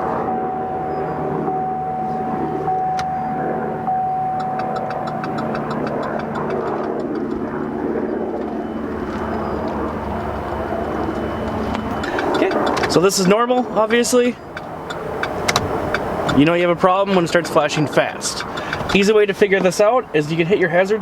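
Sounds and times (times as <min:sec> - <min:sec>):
car engine running: 0:00.0 - 0:20.6
turn signal ticking: 0:00.5 - 0:20.5.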